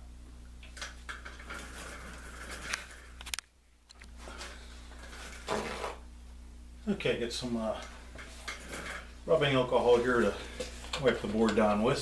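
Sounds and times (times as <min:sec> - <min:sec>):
low electrical hum: 0:00.0 - 0:12.0
objects rustling: 0:01.0 - 0:06.0, 0:07.7 - 0:11.8.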